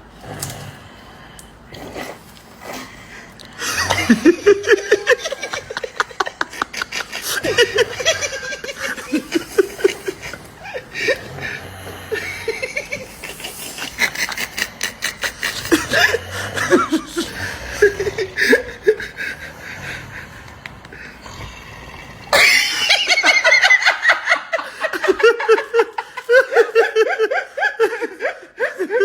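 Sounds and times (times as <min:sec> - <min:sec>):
person laughing in chuckles: 0:12.1 - 0:19.4.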